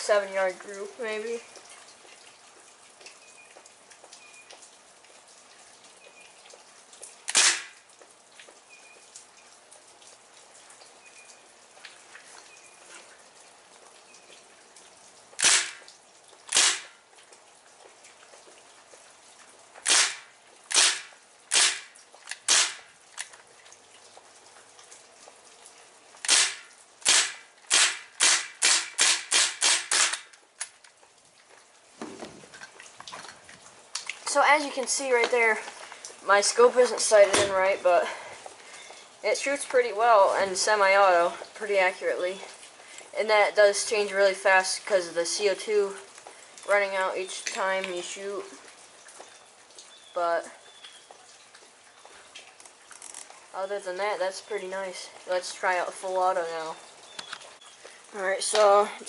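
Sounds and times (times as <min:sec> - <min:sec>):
bb gun shots cracking: 0:07.3 - 0:07.8.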